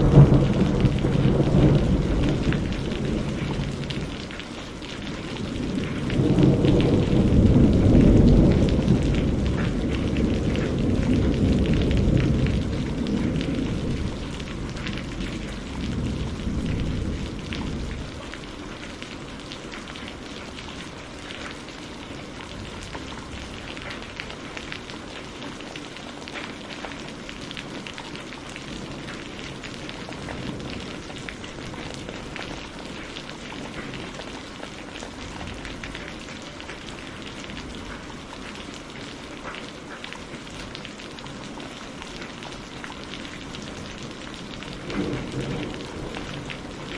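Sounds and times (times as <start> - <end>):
low thunder rumble: 0.0 - 19.4, 43.7 - 46.9
steady rain: 0.0 - 46.9.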